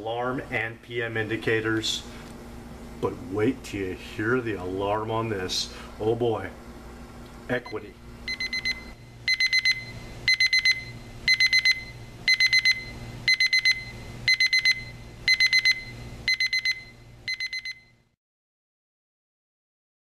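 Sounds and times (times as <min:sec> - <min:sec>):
alarm clock beeping: 0:07.7 - 0:17.9.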